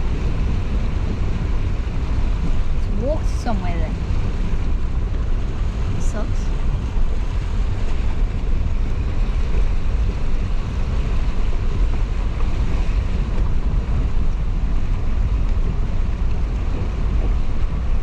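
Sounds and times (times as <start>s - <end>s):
steady rushing noise: 0.0s - 18.0s
wind buffeting microphone: 0.0s - 18.0s.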